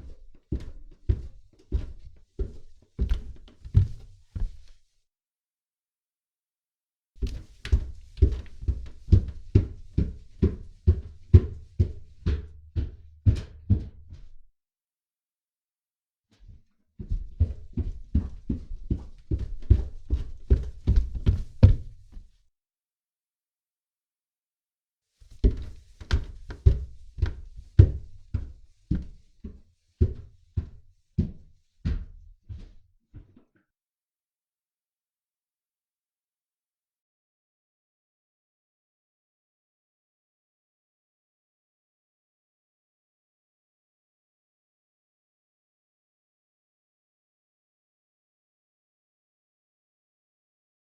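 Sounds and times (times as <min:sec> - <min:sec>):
footsteps on indoor stairs: 0:00.0 - 0:05.0, 0:07.2 - 0:14.5, 0:16.4 - 0:22.4, 0:25.2 - 0:33.6.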